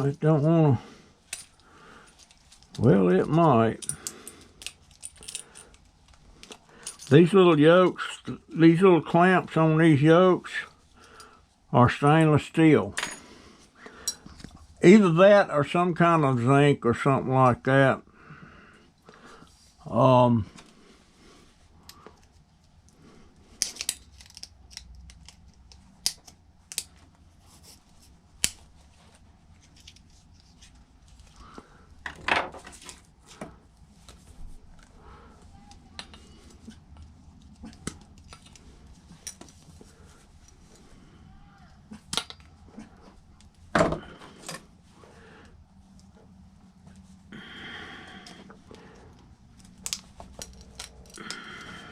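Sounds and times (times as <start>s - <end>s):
hand tools clicking and scraping: 48.2s - 51.9s.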